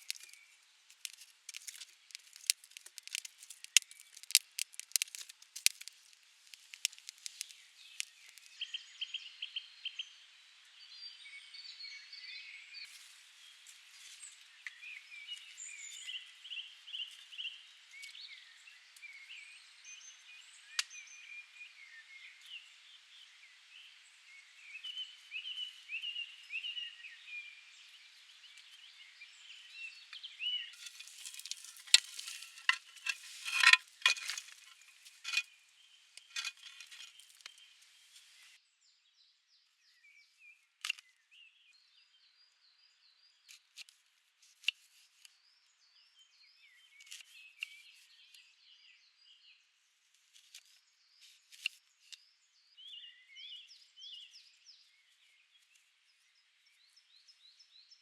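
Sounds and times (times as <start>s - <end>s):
small birds chirping: 0.0s - 58.0s
sharp clinks and crackles: 30.8s - 35.5s, 36.2s - 37.4s.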